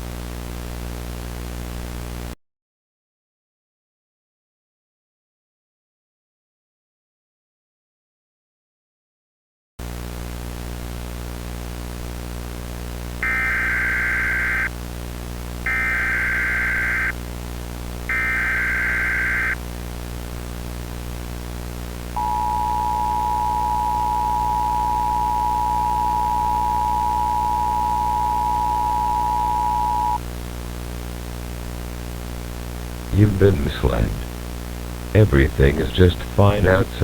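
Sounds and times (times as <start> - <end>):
buzzy electronic data screech: 18.1 - 19.6
low electronic hum: 21.9 - 30.2
two-tone attention signal: 22.2 - 30.2.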